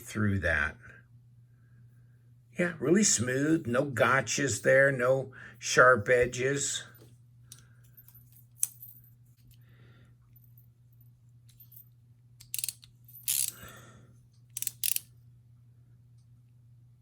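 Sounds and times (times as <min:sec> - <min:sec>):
metallic clicks of flipper knife: 0:14.6 - 0:15.1.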